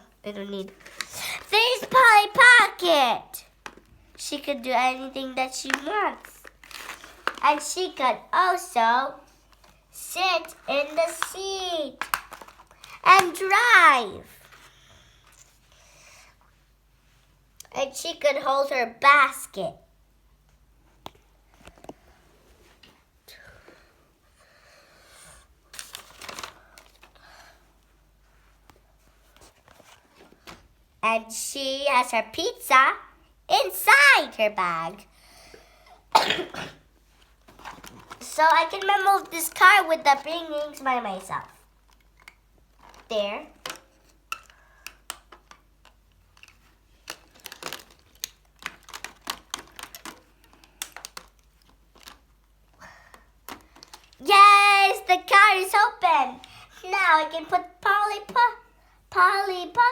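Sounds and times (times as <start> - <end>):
plastic crinkling and rustling: 0.5 - 2.4, 5.5 - 8.0, 10.4 - 13.6, 25.7 - 27.4, 37.1 - 55.0
plastic toy parts clicking: 43.6 - 52.2.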